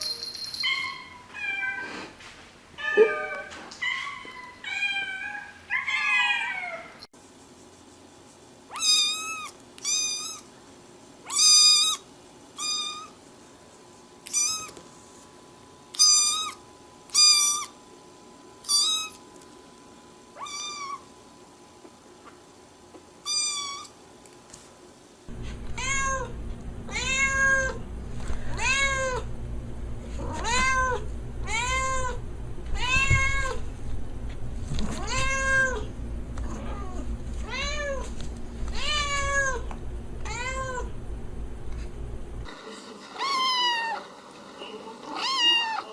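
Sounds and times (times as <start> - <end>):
cat meowing: 2.8 - 7.0, 8.7 - 10.4, 14.3 - 14.8, 20.4 - 21.0, 25.5 - 26.3, 26.9 - 27.8, 30.2 - 32.2, 32.8 - 33.6, 35.0 - 35.9, 45.1 - 45.9
low steady hum: 25.2 - 42.6.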